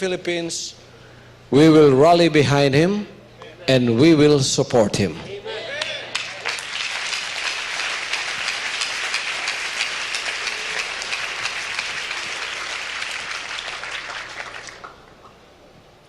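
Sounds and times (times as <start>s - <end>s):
audience applauding: 5.8s - 15.2s.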